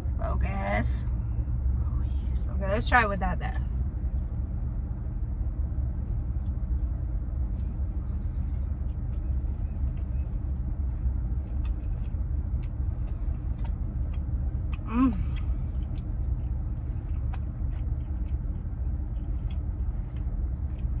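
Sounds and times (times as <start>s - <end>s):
steady low rumble: 0.0s - 21.0s
person chewing: 6.0s - 21.0s.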